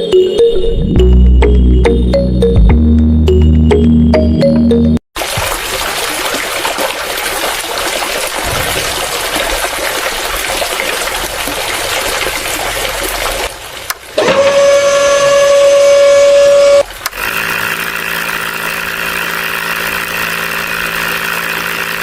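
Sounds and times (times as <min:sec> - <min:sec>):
water gushing from a pump: 0:05.2 - 0:22.0.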